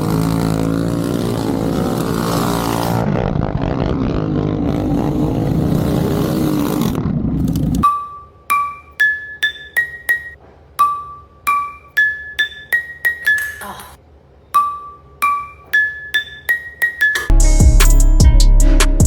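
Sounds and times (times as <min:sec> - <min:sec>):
engine running: 0:00.0 - 0:07.8
chime-like ring: 0:07.8 - 0:13.6, 0:14.6 - 0:18.4.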